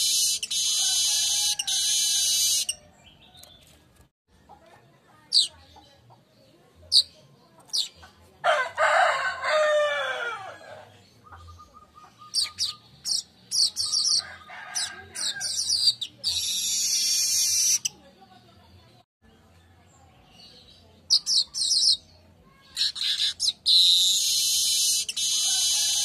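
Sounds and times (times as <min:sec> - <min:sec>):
rooster crowing: 0:00.6 - 0:02.3, 0:08.4 - 0:10.9, 0:14.2 - 0:15.5, 0:25.4 - 0:26.0
bird chirping: 0:11.0 - 0:26.0.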